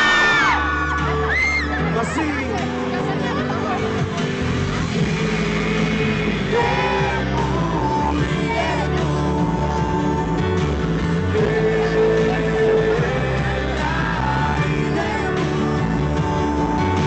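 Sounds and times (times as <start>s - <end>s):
bass: 0.0s - 17.0s
person singing: 4.8s - 17.0s.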